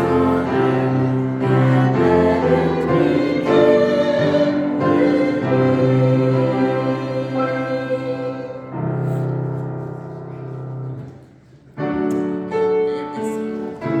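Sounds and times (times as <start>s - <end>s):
piano playing slow chords: 0.0s - 11.1s.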